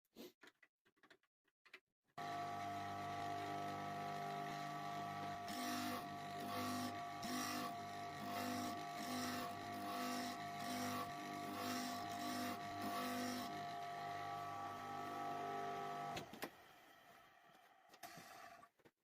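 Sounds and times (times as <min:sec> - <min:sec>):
sharpening machine motor humming: 0:02.2 - 0:16.2.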